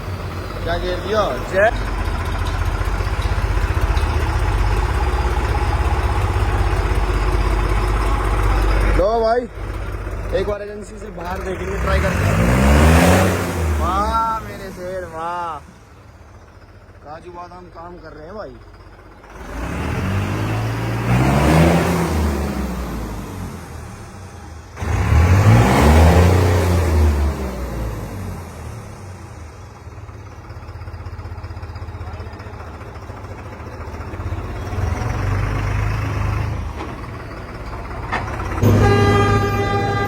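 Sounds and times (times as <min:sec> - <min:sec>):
tractor diesel engine revving: 0:00.0 - 0:40.0.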